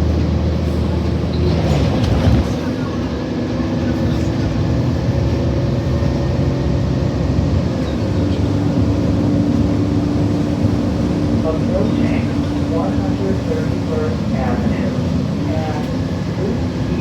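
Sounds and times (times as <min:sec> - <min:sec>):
bus engine running: 0:00.0 - 0:17.0.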